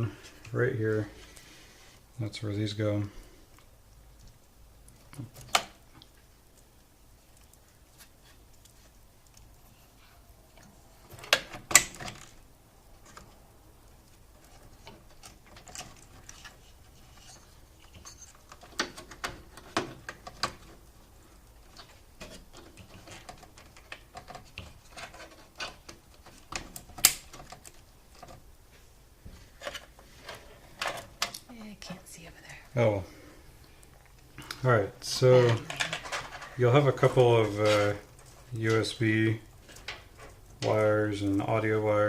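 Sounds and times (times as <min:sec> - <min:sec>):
cable rustling: 0:00.0 - 0:42.0.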